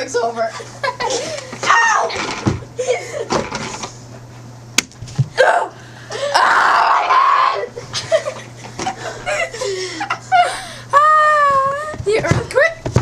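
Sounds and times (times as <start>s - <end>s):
person yelling: 5.4s - 7.7s.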